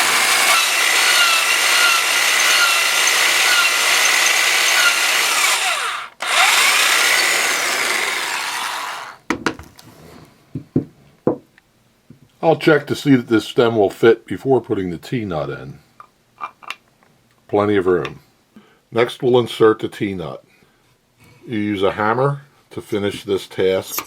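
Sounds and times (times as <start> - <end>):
power drill boring into wood: 0.0 - 9.2.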